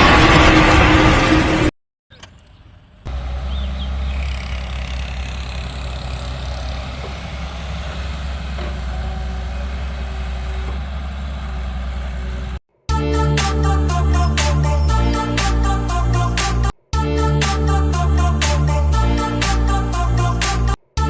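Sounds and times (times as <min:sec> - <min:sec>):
heavy vehicle engine running: 0:00.0 - 0:12.6.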